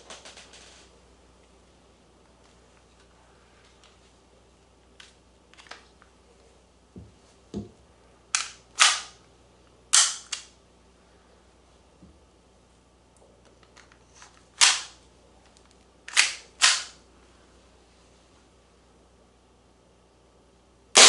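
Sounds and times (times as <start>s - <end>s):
airsoft pistol firing sharp cracks: 8.4s - 9.2s, 9.9s - 10.5s.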